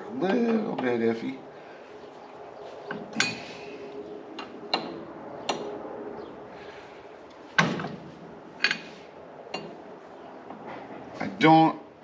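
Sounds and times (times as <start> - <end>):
wrench clinking on metal: 2.9 - 3.6.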